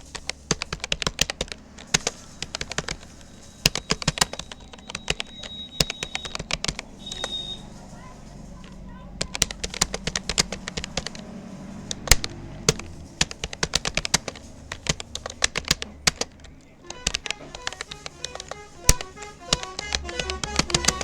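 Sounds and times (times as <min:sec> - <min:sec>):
keyboard key clicks: 0:00.0 - 0:07.6, 0:08.6 - 0:21.0
short melodic music notes: 0:16.8 - 0:21.0.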